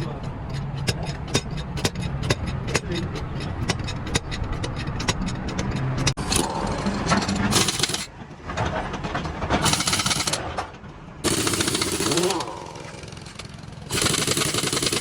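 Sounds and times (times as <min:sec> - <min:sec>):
hand tools clicking: 0:00.0 - 0:08.1, 0:09.6 - 0:10.5, 0:11.2 - 0:15.0.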